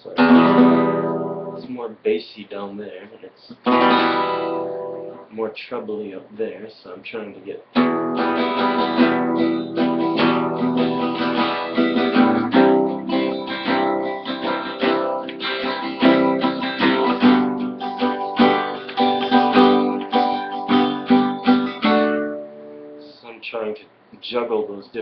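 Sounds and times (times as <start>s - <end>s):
acoustic guitar strumming chords: 0.0s - 1.8s, 3.5s - 5.4s, 7.7s - 23.3s
guitar pick clicking: 15.2s - 15.5s.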